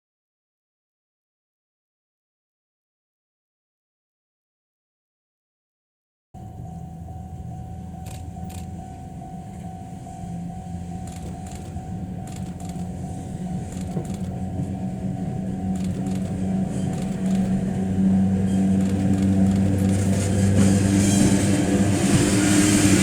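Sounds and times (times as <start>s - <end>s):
model train motor hum and rumble: 7.4s - 9.0s, 10.6s - 23.0s
rail joint clicks: 8.0s - 23.0s.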